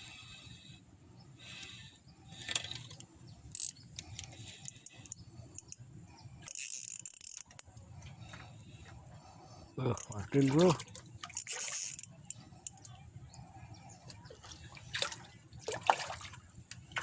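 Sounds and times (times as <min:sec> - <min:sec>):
fishing reel clicking: 0:02.4 - 0:05.8, 0:06.4 - 0:07.7, 0:11.4 - 0:12.8.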